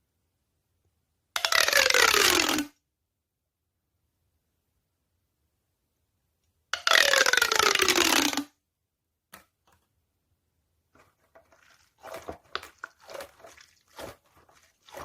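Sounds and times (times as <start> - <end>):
crinkling squishing handling: 10.9 - 15.0.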